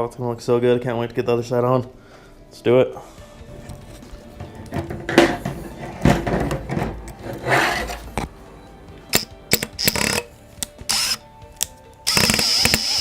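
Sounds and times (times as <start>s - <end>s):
background music: 0.0s - 13.0s
antler knocking and scraping: 3.4s - 8.4s.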